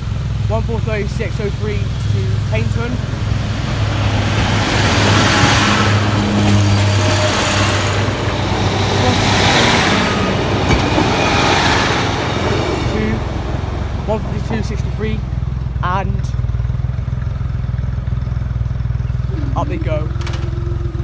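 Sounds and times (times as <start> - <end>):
train wheels rushing: 0.0 - 15.8
train engine hum: 0.0 - 21.0.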